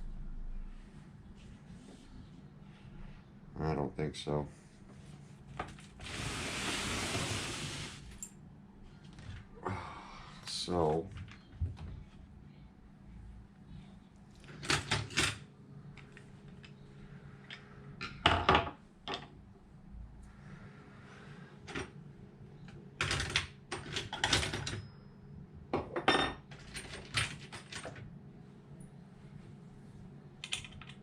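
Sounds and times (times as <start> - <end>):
steady low hum: 0.0 - 5.9, 8.1 - 14.6, 15.3 - 23.0, 28.0 - 31.0.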